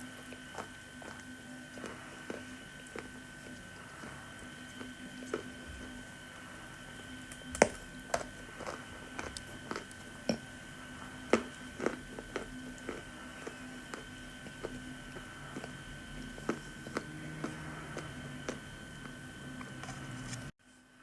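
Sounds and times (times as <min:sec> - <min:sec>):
faint steady hum: 0:00.0 - 0:21.0.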